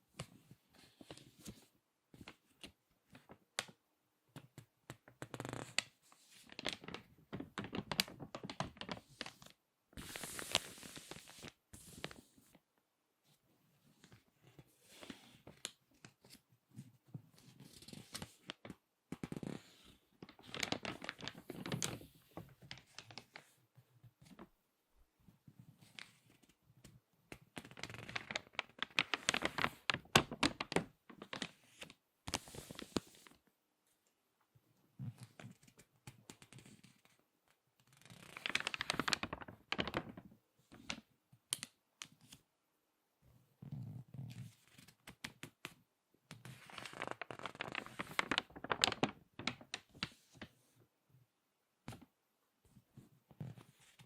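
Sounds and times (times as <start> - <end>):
magazine pages crinkling: 5.4 - 12.1, 20.2 - 23.5, 27.6 - 33.2, 37.9 - 40.2, 46.4 - 50.5.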